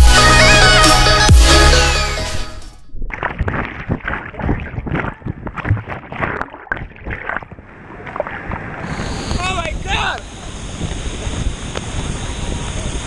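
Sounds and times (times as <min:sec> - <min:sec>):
muffled water splashing: 0:02.9 - 0:13.0.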